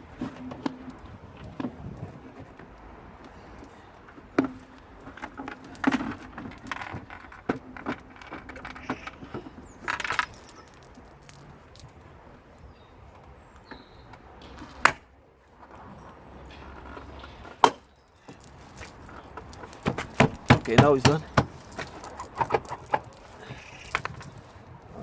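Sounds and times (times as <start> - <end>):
light metallic clinks: 3.3 - 12.0, 16.0 - 24.6
tools clicking and knocking: 3.6 - 11.9, 16.8 - 24.4
rustling: 16.5 - 24.7.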